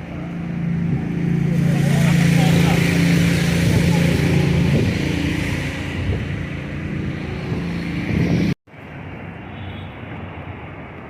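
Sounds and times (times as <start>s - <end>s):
vehicle engine running: 0.0s - 8.6s
street noise: 0.0s - 11.0s.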